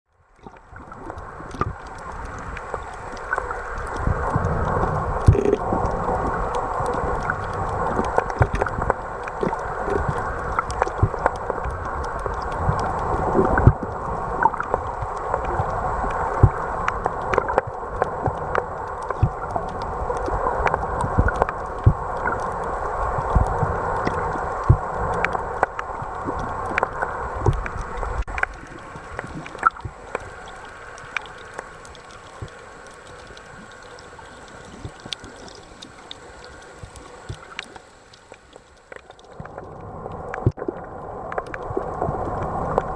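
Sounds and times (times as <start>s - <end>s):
muffled water sloshing and gurgling: 0.1s - 42.9s
sharp clicks and pops: 0.4s - 15.6s, 23.2s - 34.0s.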